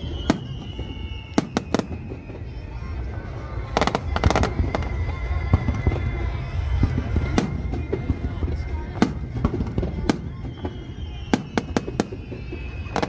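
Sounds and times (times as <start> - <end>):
fireworks bangs: 0.0 - 13.0
fireworks crackling: 0.0 - 13.0
low rumble of fireworks: 0.0 - 13.0.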